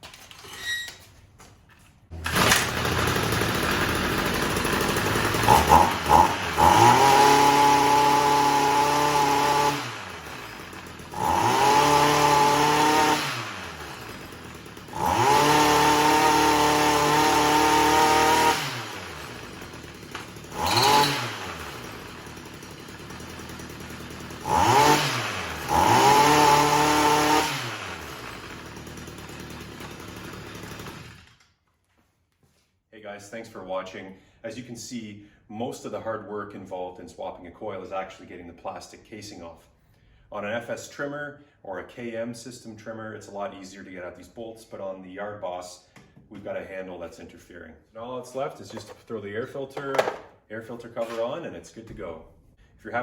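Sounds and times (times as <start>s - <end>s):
two-stroke engine revving: 2.1s - 31.4s.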